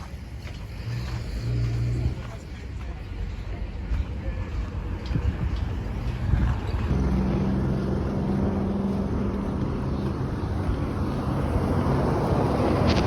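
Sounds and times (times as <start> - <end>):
vehicle engine running: 0.0 - 13.0
wind-like noise: 0.0 - 13.0.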